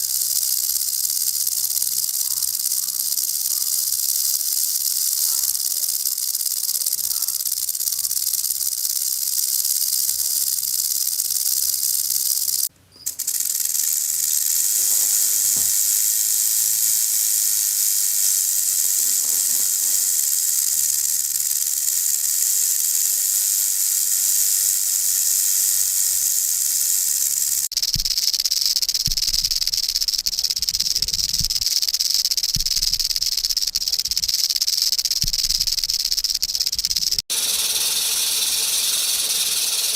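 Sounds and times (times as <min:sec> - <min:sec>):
rattlesnake rattle buzzing: 0:00.0 - 0:39.9.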